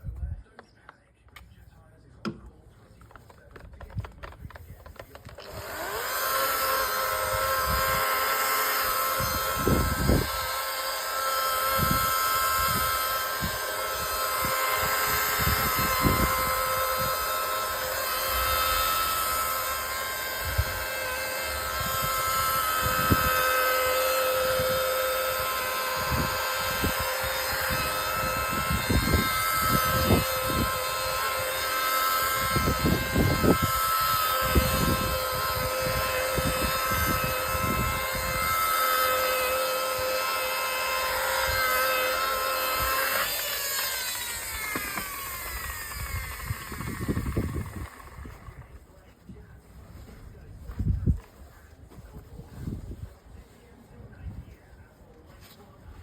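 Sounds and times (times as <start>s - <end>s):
polishing machine whining: 4.2s - 48.8s.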